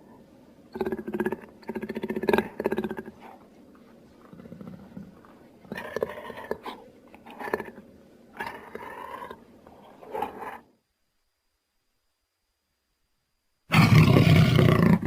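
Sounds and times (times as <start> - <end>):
big cat growling: 0.7 - 3.4, 4.2 - 10.7, 13.7 - 15.0.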